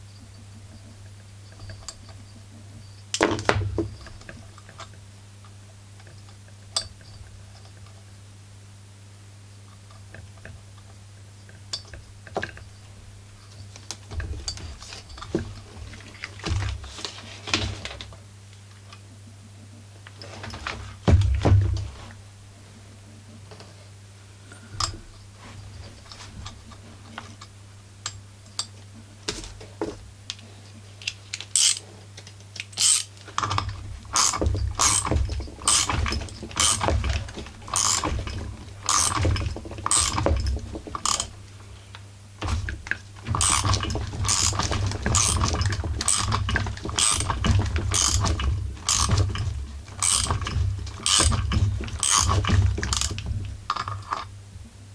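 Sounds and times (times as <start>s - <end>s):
ratcheting wrench clicking: 31.0s - 31.8s, 32.6s - 38.2s, 38.8s - 41.3s, 43.3s - 54.3s.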